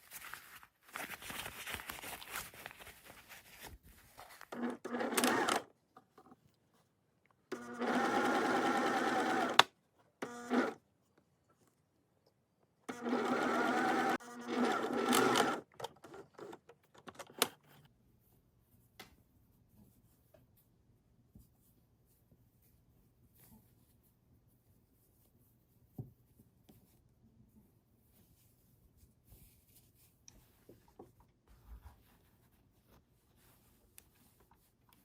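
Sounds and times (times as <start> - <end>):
sewing machine stitching: 4.5 - 5.7, 7.5 - 10.8, 12.9 - 17.6.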